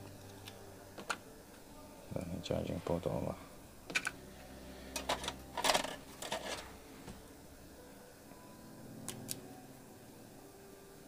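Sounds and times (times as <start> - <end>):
low steady hum: 0.0 - 11.0
small tools clicking and scraping: 4.9 - 6.7.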